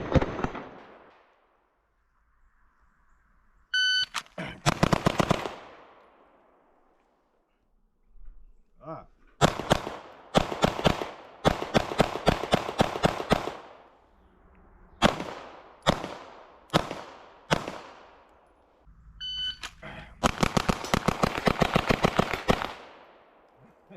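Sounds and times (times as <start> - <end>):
gunshots: 0.0 - 1.3, 4.3 - 6.3, 9.4 - 14.0, 14.9 - 18.3, 19.6 - 23.4
short beep: 3.7 - 4.3, 19.2 - 19.8.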